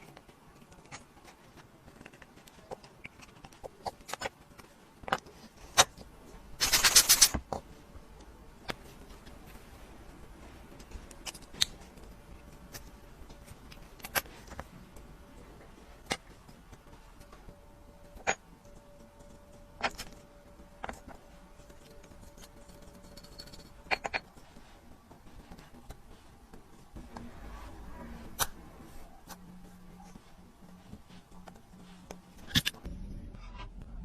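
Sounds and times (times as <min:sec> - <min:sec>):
faint steady hum: 0:00.0 - 0:34.0.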